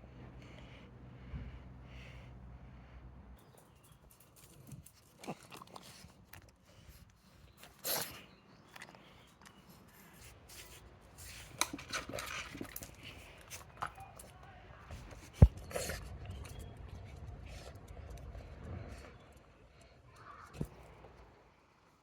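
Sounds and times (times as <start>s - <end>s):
dog crunching treats: 4.0s - 18.4s
dog sniffing: 5.4s - 8.3s.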